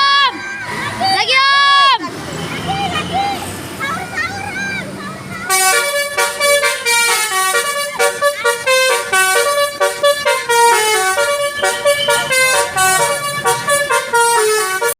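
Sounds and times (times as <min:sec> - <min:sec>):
bus musical horn tune: 0:05.5 - 0:14.9.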